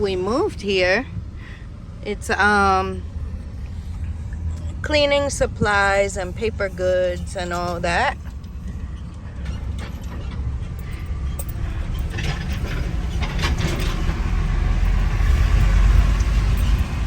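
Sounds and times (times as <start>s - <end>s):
car engine and road rumble: 0.0s - 17.0s.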